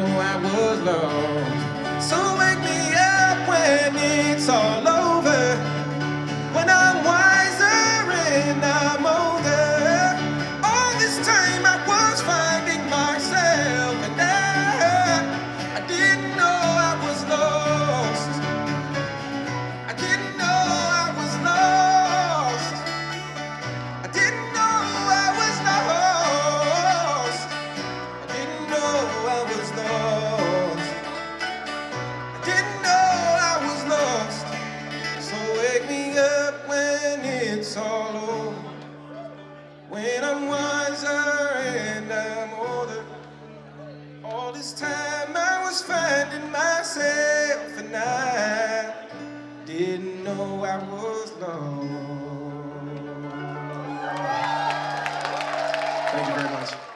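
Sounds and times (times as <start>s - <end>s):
person singing wordless melody: 0.0s - 54.4s
guitar and bass chords: 0.0s - 56.9s.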